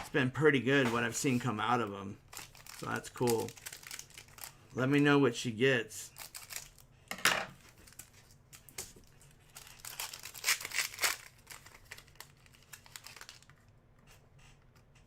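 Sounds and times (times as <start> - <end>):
card pack wrapper crinkling: 2.2 - 4.8, 6.1 - 6.9, 7.6 - 13.6.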